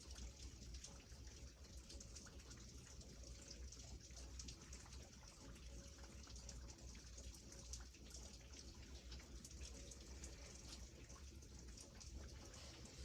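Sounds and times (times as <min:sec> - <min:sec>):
faint steady rain: 0:00.0 - 0:13.0.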